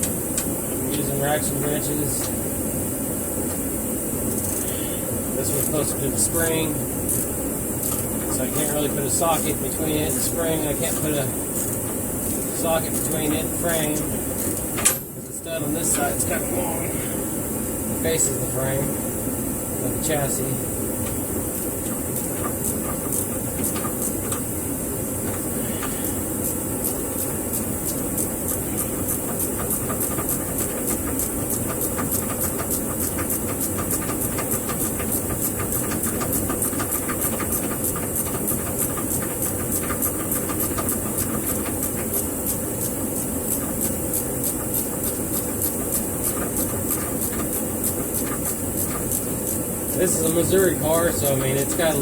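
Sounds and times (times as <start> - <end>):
steady background hiss: 0.0 - 52.0
ratcheting wrench clicking: 4.4 - 4.7.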